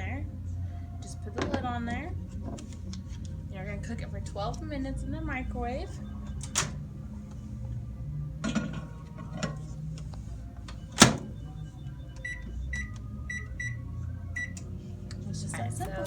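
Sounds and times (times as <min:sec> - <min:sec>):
microwave humming: 0:00.0 - 0:16.0
microwave beeping: 0:08.1 - 0:14.8.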